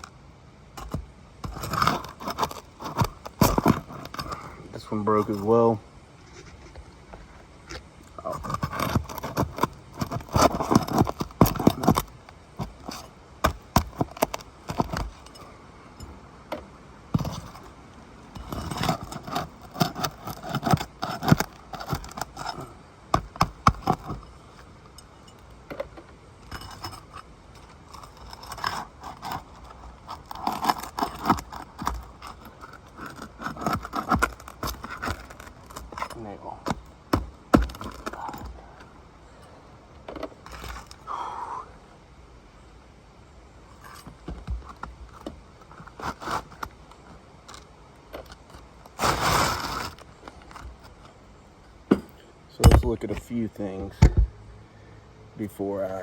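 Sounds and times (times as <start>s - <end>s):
metal tool scraping shingles: 0.8s - 5.7s, 7.7s - 16.1s, 18.3s - 25.4s, 26.4s - 38.6s, 43.8s - 51.0s.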